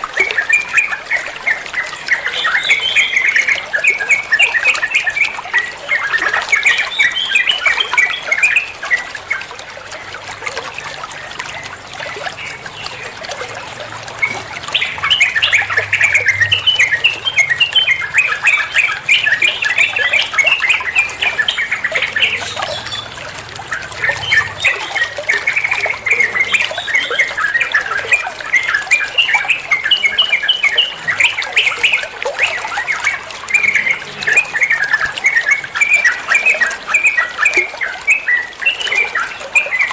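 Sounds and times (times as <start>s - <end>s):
bird singing chattering notes: 10.9s - 39.9s.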